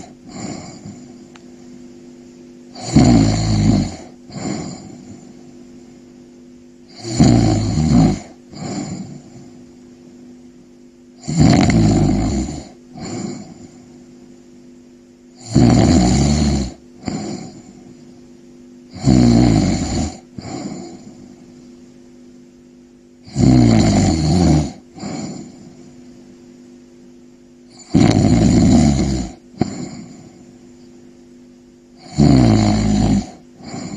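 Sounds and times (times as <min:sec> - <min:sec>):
person snoring: 0:00.0 - 0:01.3, 0:02.7 - 0:06.0, 0:06.9 - 0:09.6, 0:11.2 - 0:14.0, 0:15.4 - 0:18.1, 0:18.9 - 0:21.4, 0:23.2 - 0:26.0, 0:27.7 - 0:30.6, 0:32.0 - 0:33.9
soft breath: 0:08.5 - 0:09.8, 0:20.4 - 0:21.8, 0:25.0 - 0:26.2, 0:29.6 - 0:30.7.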